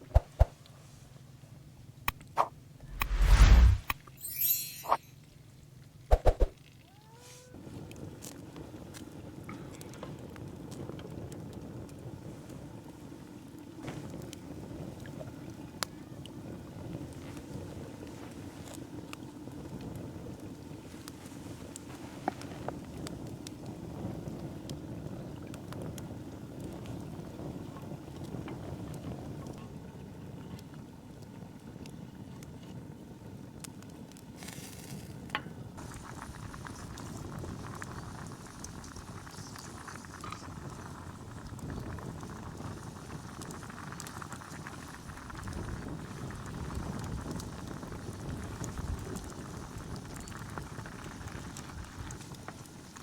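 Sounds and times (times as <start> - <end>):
sharp click: 2.1 - 4.0
food bubbling in a pot: 35.1 - 53.0.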